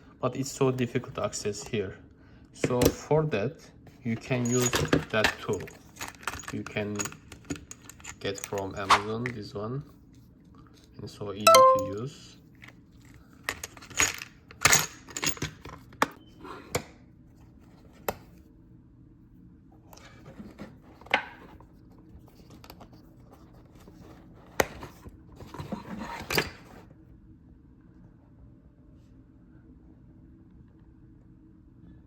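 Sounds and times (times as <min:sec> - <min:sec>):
metal tools clicking and knocking: 0:04.4 - 0:09.1.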